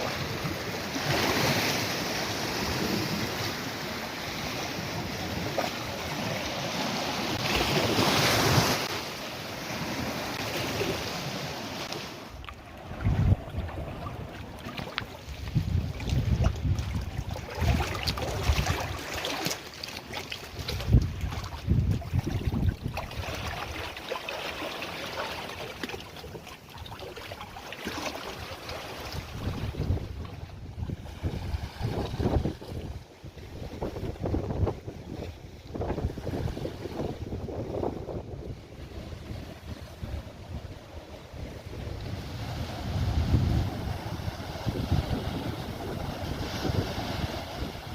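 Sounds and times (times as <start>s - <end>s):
sea waves washing onto beach: 0.0s - 47.9s
water trickling and splashing: 10.0s - 34.4s
wind buffeting microphone: 12.7s - 19.1s, 20.6s - 23.8s, 29.1s - 47.9s.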